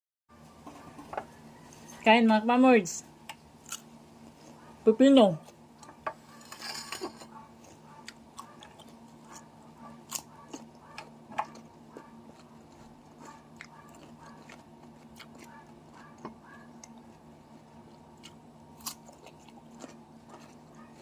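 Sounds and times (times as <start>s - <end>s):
person chewing crunchy cucumber: 3.3s - 4.8s, 7.3s - 21.0s.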